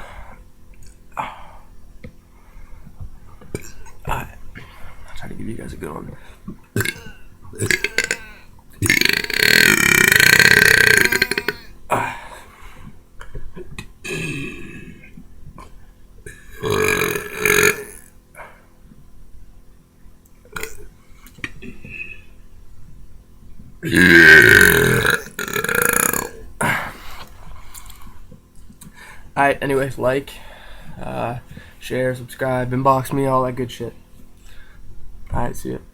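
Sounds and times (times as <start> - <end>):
man belching loudly: 6.8 - 12.3, 14.0 - 15.1, 16.3 - 18.1, 20.5 - 20.9, 23.8 - 26.9.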